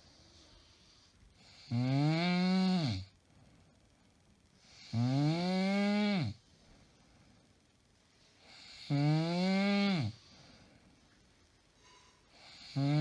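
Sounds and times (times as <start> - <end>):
woman snoring loudly: 1.4 - 3.1, 4.8 - 6.4, 8.5 - 10.2, 12.4 - 13.0
breathy inhale: 10.2 - 11.1, 11.8 - 12.7.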